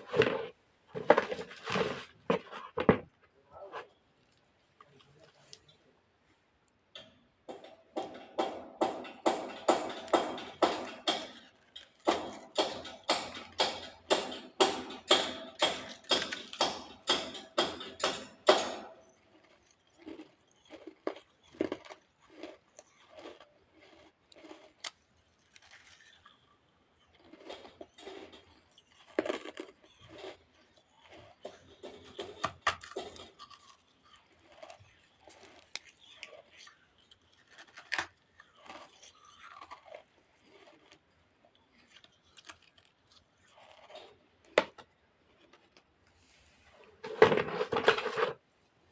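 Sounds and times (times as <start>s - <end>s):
baked clay crunching while chewed: 0.0s - 5.8s, 6.6s - 48.4s.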